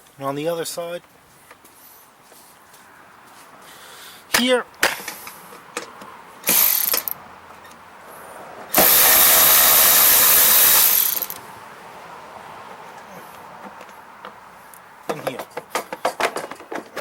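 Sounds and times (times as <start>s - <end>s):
power driver removing bolts: 4.3s - 7.7s, 8.7s - 11.4s.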